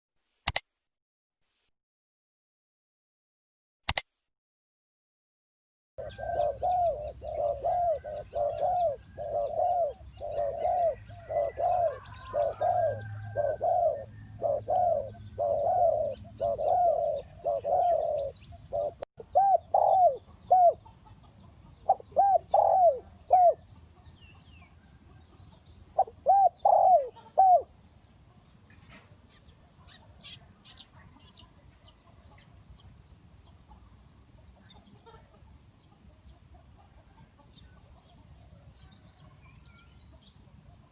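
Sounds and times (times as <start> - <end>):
dove cooing: 6.0 - 20.9, 21.8 - 23.7, 26.0 - 27.7.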